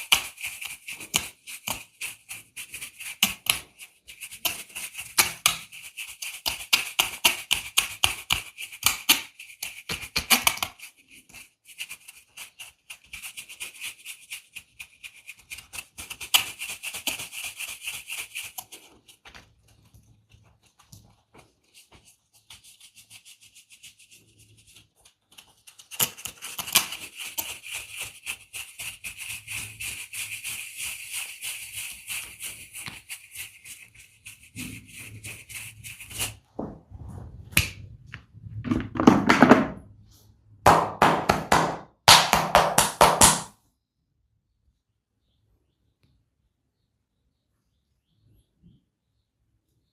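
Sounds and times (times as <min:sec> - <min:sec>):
hands rubbing and tapping skin: 0:00.0 - 0:24.2, 0:24.8 - 0:36.4, 0:40.7 - 0:43.5.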